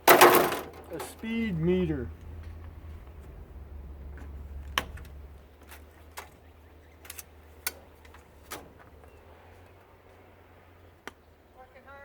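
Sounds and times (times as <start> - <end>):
water heater parts clicking: 0.0 - 1.2
low steady hum: 0.0 - 6.8.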